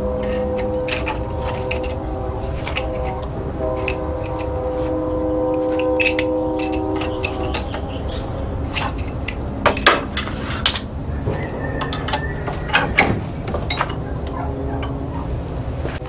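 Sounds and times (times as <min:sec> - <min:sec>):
steady low noise: 0:00.0 - 0:16.0
hammer striking steel on anvil: 0:05.5 - 0:15.0.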